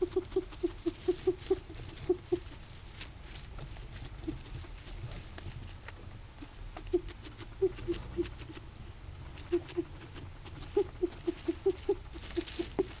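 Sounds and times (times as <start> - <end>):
guinea pig wheezing: 0.0 - 2.6, 6.4 - 8.7, 9.3 - 13.0.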